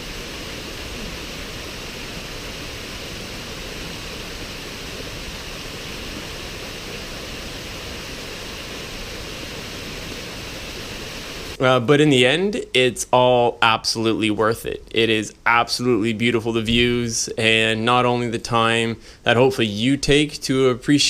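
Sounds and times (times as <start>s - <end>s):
rushing water: 0.0s - 11.6s.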